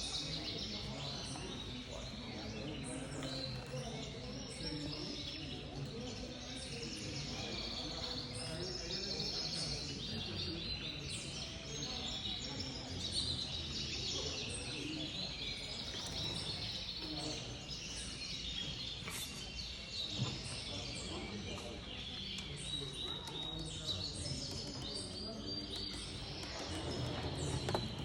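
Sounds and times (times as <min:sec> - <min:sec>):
canaries chirping and trilling: 0:00.0 - 0:28.0
murmur of voices: 0:00.0 - 0:28.0.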